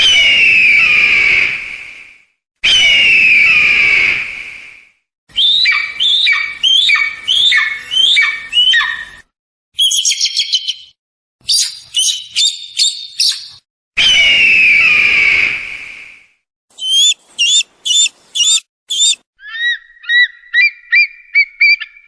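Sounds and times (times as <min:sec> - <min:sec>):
eagle piercing cries: 0:05.3 - 0:09.2, 0:16.8 - 0:22.0
eagle harsh scream: 0:16.8 - 0:19.2
eagle high-pitched chittering: 0:16.8 - 0:19.2.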